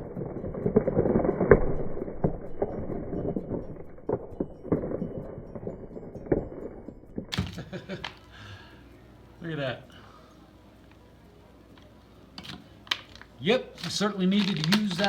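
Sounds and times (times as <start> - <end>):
frozen vegetables clattering in pot: 12.4 - 15.0.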